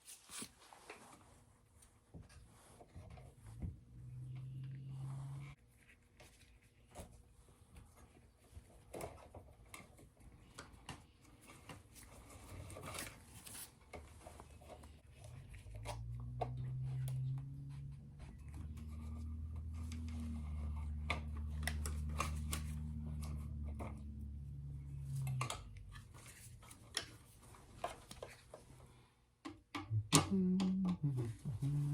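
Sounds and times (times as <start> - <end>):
low steady hum: 2.6 - 5.6, 14.7 - 26.8, 29.8 - 31.9.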